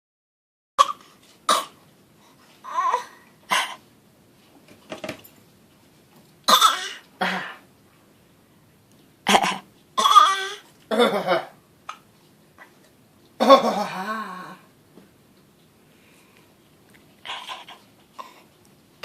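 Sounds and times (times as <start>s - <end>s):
person fake coughing: 6.5s - 7.6s, 9.3s - 11.6s.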